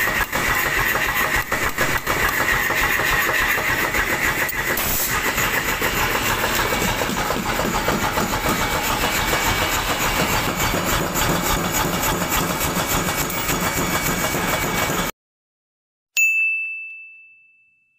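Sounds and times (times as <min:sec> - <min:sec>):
machine running steadily: 0:00.0 - 0:15.1.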